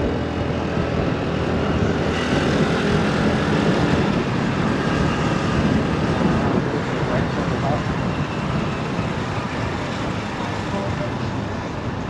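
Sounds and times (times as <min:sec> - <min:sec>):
road and traffic noise: 0:00.0 - 0:12.0.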